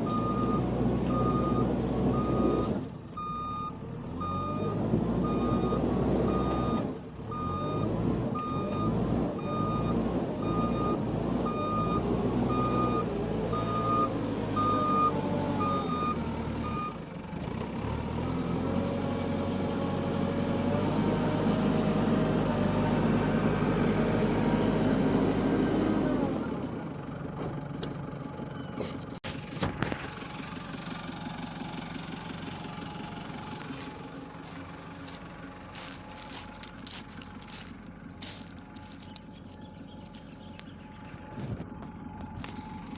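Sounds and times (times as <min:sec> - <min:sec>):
diesel engine running: 0:00.0 - 0:42.9
reversing alarm beeping: 0:00.1 - 0:17.0.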